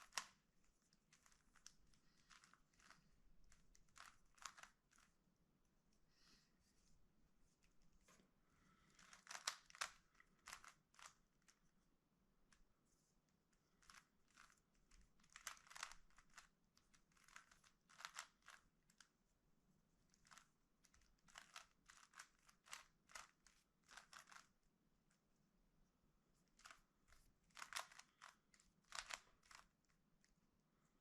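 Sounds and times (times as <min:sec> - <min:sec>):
puzzle cube plastic clicking: 0:00.0 - 0:00.4, 0:01.1 - 0:05.1, 0:08.9 - 0:11.6, 0:13.8 - 0:19.1, 0:20.1 - 0:24.5, 0:26.5 - 0:29.9.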